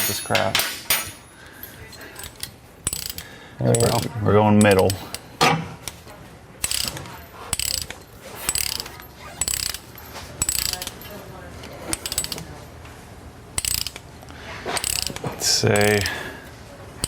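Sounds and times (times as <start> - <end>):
hand ratchet clicking: 2.1 - 5.3, 6.6 - 11.0, 11.9 - 12.4, 13.6 - 14.1, 14.8 - 16.3.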